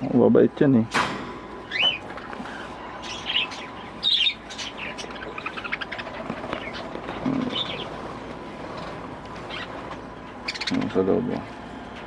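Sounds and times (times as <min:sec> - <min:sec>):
budgerigars chattering: 0:01.6 - 0:08.0, 0:09.5 - 0:09.8, 0:10.4 - 0:11.2.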